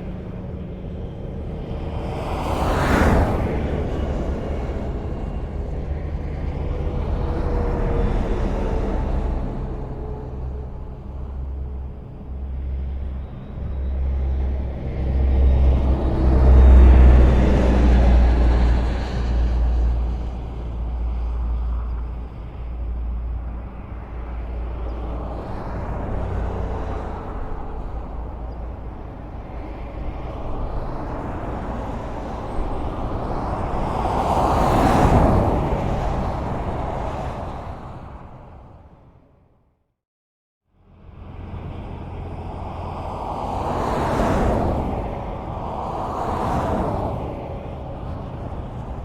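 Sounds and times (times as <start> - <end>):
highway traffic rumble: 0.0 - 39.8, 40.6 - 49.0
vehicle sweeping past: 24.1 - 38.8, 41.1 - 49.0.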